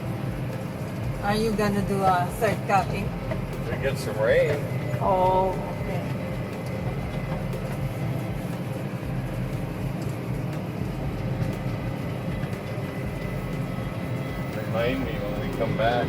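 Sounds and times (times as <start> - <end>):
tractor engine drone: 0.0 - 16.0.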